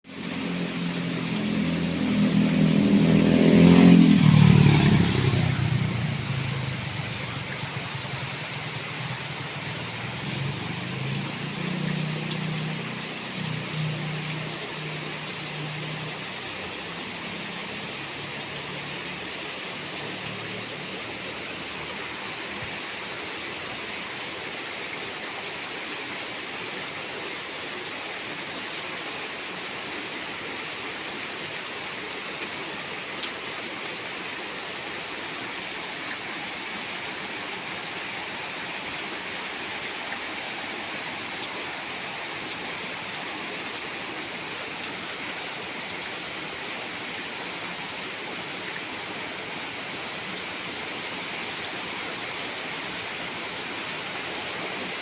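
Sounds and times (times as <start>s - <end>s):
rain hiss: 0.1s - 55.0s
vehicle passing: 0.2s - 22.1s.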